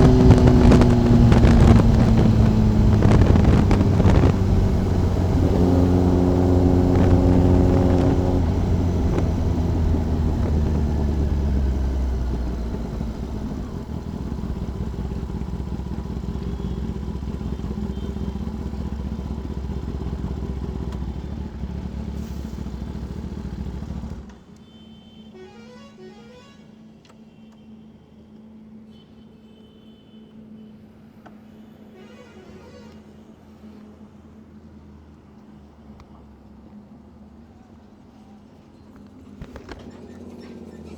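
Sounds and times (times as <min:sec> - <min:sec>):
motorcycle engine running: 0:00.0 - 0:24.3.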